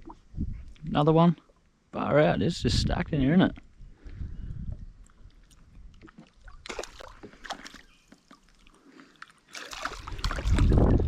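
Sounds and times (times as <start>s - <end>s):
water splashing against kayak: 5.4s - 11.0s.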